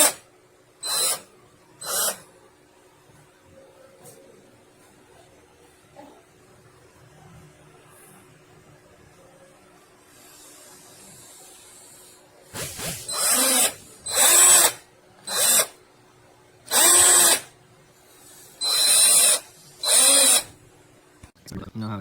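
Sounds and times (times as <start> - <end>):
cordless drill motor whining: 0.8 - 2.2, 12.9 - 15.7, 16.7 - 17.5, 18.6 - 20.5.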